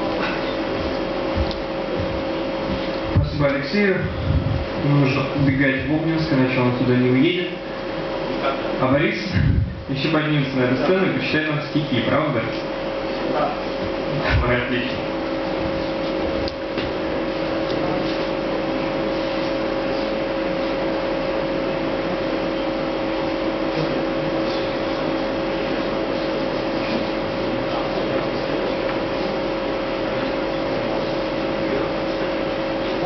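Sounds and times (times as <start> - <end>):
room noise: 0.0 - 33.0.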